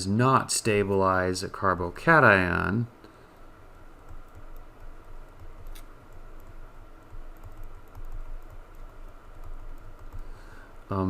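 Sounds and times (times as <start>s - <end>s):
faint clicking and tapping: 3.0s - 11.0s.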